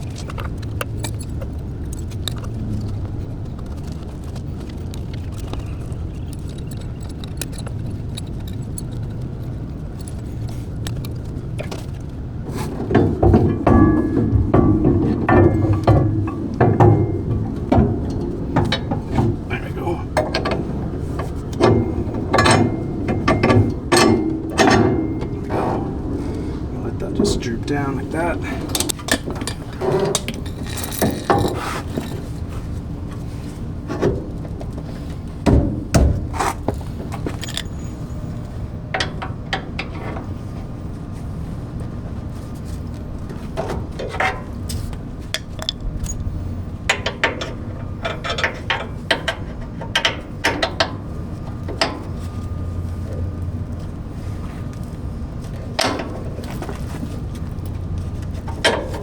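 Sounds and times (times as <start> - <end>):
steady low hum: 0.0 - 59.0
hand tools clanking on metal: 9.9 - 32.6, 33.9 - 38.2, 46.9 - 53.3, 55.5 - 59.0.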